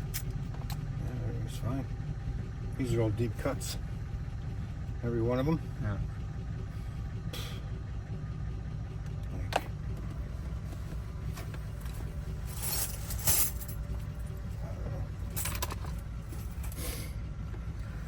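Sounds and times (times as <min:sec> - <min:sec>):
keys jangling: 0:11.4 - 0:13.9.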